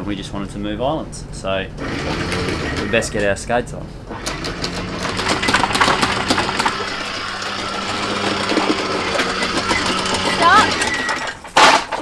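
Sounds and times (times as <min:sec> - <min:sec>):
boat engine idling: 0:00.0 - 0:11.4
sharp clicks and knocks: 0:04.1 - 0:12.0.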